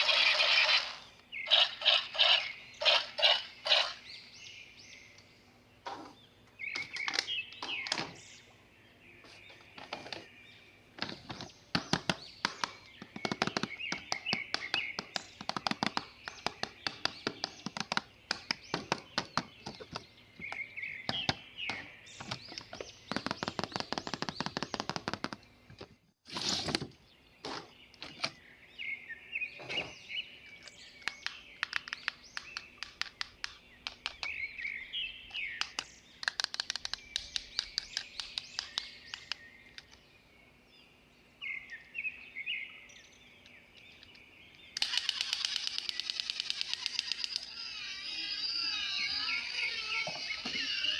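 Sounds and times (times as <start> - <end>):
plastic toy parts clicking: 35.6 - 40.0, 44.8 - 47.5.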